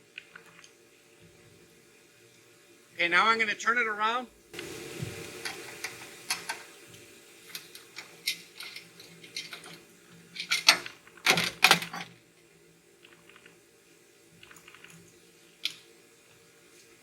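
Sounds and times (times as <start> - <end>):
metal clanking and scraping: 7.6 - 12.2.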